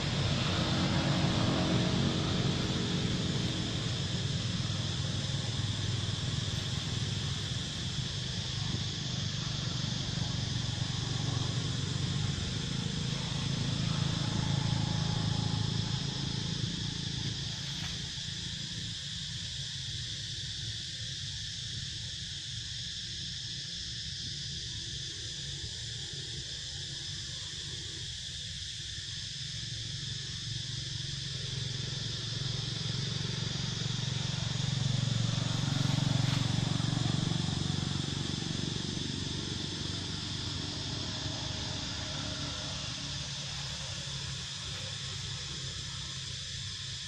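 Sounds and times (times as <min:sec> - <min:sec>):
high-pitched insect chorus: 0:00.0 - 0:47.0.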